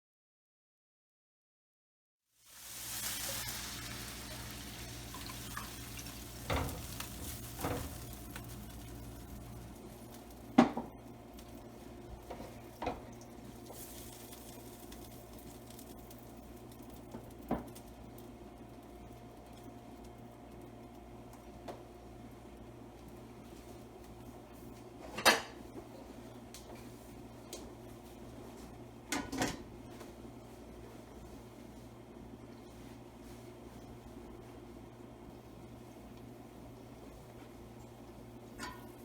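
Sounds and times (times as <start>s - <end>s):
food sizzling in a wok: 2.3s - 18.0s.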